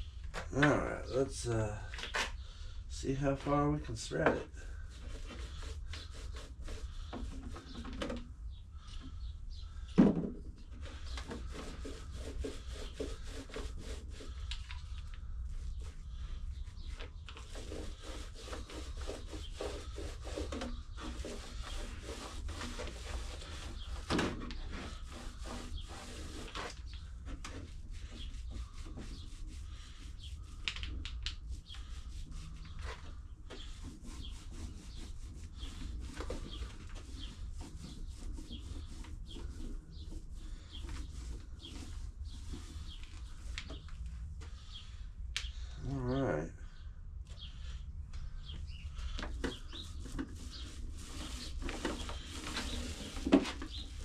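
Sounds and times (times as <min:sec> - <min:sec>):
spreader scraping a wooden surface: 0:03.1 - 0:08.3, 0:10.6 - 0:30.6, 0:31.4 - 0:44.9, 0:48.9 - 0:54.0.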